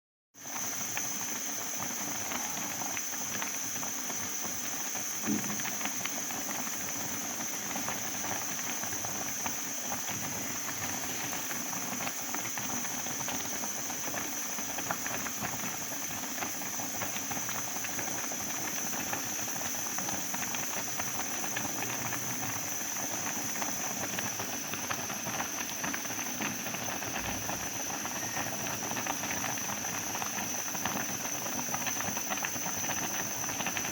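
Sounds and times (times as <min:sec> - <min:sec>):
steam hissing from boiling pot: 0:00.4 - 0:33.9
brief knock: 0:05.3 - 0:05.6.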